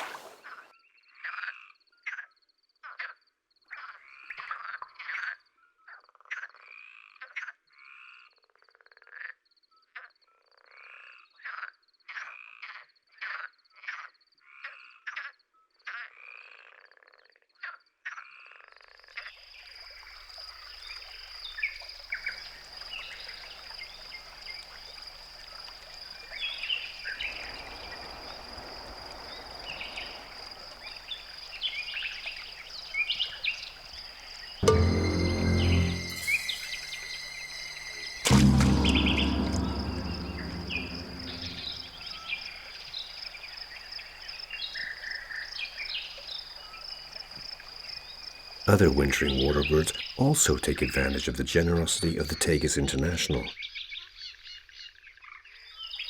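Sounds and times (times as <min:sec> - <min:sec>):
high-pitched trill: 0:34.6 - 0:42.0
faint chirps: 0:34.6 - 0:42.1
high whine: 0:34.6 - 0:42.1
low hum: 0:34.6 - 0:42.1.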